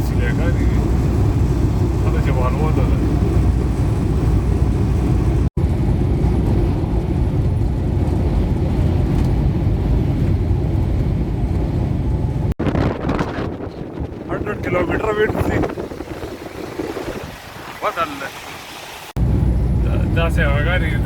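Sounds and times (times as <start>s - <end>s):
vehicle road and engine rumble: 0.0s - 21.0s.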